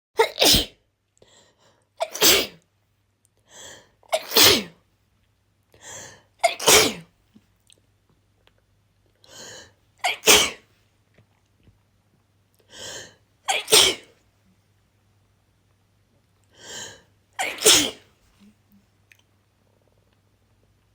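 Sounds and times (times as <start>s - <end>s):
person sneezing: 0.2s - 0.8s, 2.0s - 2.6s, 4.1s - 4.8s, 6.4s - 7.1s, 10.0s - 10.6s, 13.5s - 14.1s, 16.7s - 18.1s.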